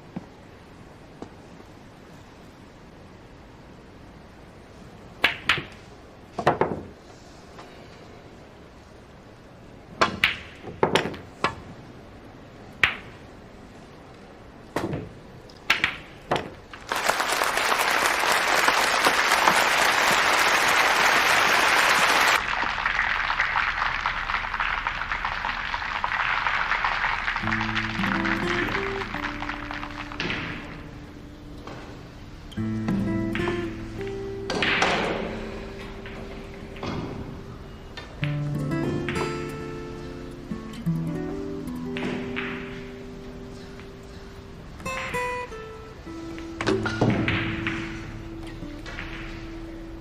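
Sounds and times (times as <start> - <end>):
faint background hiss: 0.0 - 50.0
audience applause: 16.8 - 31.1
billiard balls clicking: 24.8 - 31.0, 46.4 - 50.0.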